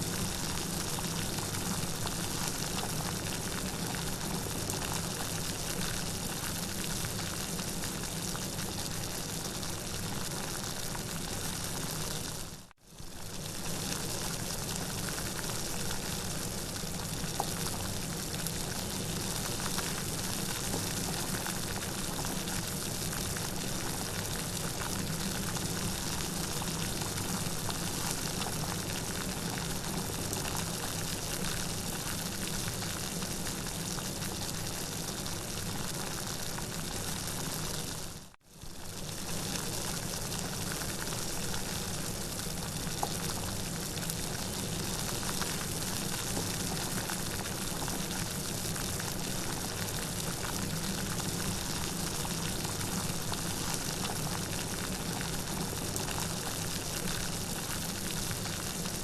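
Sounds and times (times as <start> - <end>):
steady rain: 13.4 - 59.0.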